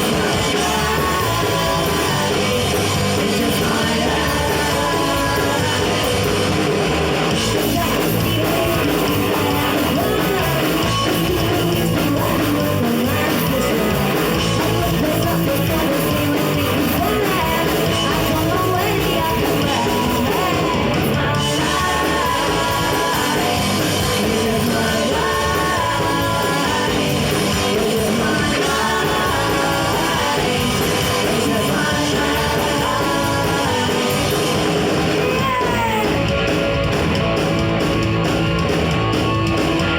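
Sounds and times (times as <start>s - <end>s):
person singing: 0.0s - 6.6s, 7.3s - 36.5s
punk rock band playing: 0.0s - 39.9s.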